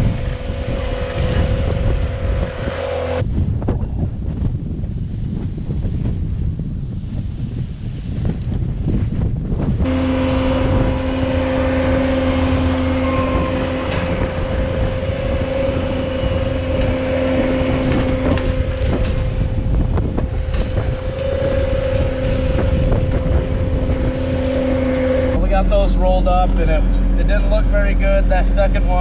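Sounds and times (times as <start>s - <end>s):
skid steer engine running: 0.0s - 3.2s, 9.8s - 29.0s
steady whine: 0.0s - 3.4s, 9.8s - 29.0s
wind buffeting microphone: 0.0s - 29.0s.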